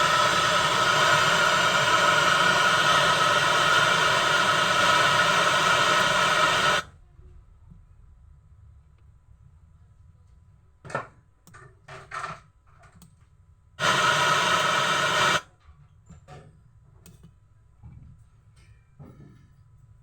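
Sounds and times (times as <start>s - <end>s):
loud burst of hiss: 0.0s - 6.9s, 13.8s - 15.4s.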